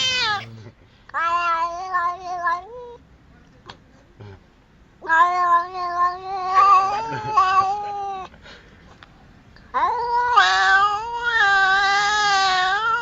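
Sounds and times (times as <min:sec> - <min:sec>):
long drawn-out animal calls: 0:00.0 - 0:00.5.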